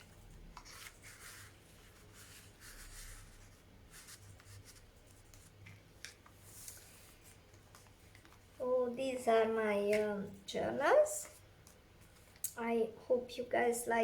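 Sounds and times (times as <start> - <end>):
paper pages rustling: 0.0 - 8.6.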